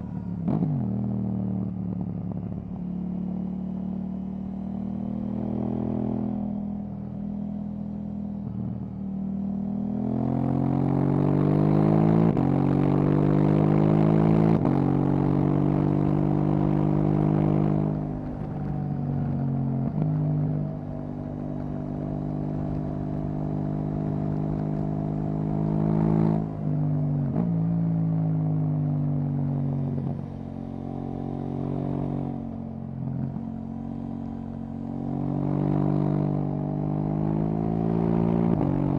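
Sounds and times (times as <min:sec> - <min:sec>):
motorcycle engine revving: 0:09.8 - 0:27.5.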